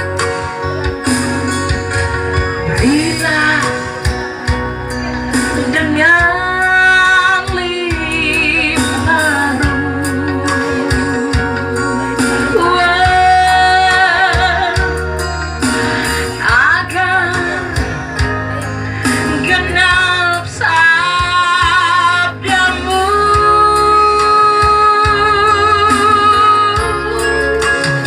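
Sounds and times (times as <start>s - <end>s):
steady bass beat: 0.0s - 23.9s
guitar: 0.0s - 28.0s
woman singing: 2.7s - 4.2s, 5.5s - 15.0s, 16.4s - 18.2s, 19.1s - 28.0s.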